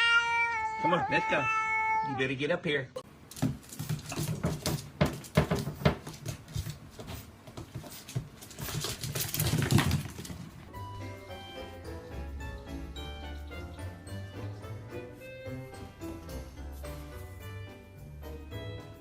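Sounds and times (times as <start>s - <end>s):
animal moving on hard surfaces: 3.1s - 10.8s.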